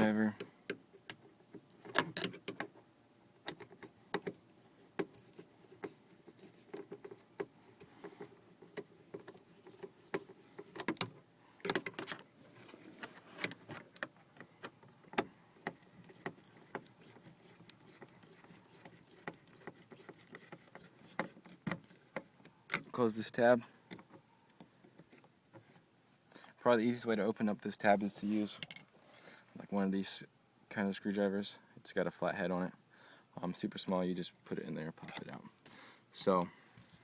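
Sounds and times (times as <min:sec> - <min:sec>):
plastic trim creaking and knocking: 0:01.8 - 0:02.8, 0:05.0 - 0:23.0.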